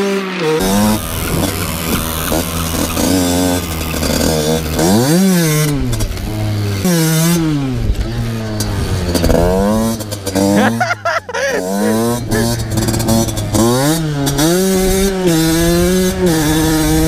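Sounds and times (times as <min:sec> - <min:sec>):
motocross bike engine revving: 0:00.0 - 0:17.0.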